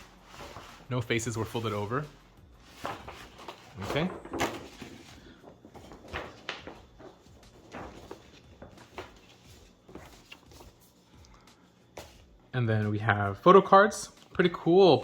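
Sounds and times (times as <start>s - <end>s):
paper and cardboard rustling: 0.0s - 11.1s.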